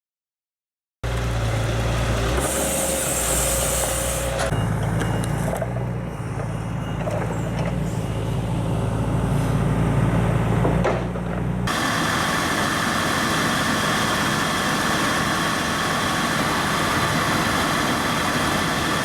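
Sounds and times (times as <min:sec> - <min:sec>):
truck diesel engine running: 0:01.0 - 0:19.0
compressed air hiss: 0:02.4 - 0:04.5.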